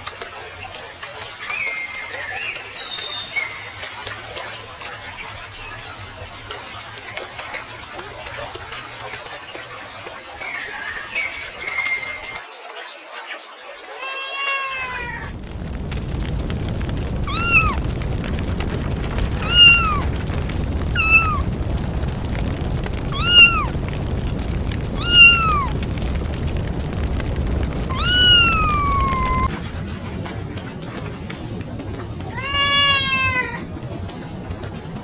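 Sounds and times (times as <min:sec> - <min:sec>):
cat meowing: 0:14.0 - 0:15.3, 0:17.2 - 0:17.8, 0:19.4 - 0:20.2, 0:20.9 - 0:21.5, 0:23.1 - 0:23.8, 0:25.0 - 0:25.7, 0:27.8 - 0:29.5, 0:32.3 - 0:33.6
steady low noise: 0:15.0 - 0:32.4.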